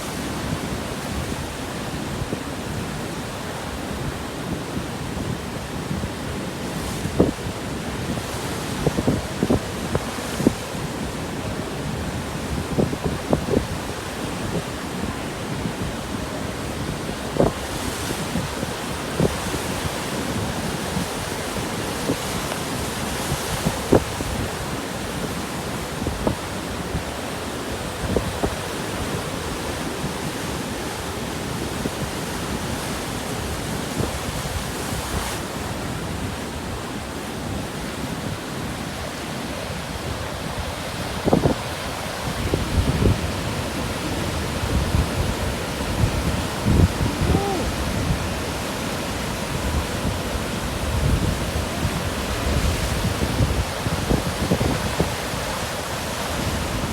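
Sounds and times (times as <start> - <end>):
rough surf breaking: 16.9 - 56.9
wind buffeting microphone: 39.7 - 56.9.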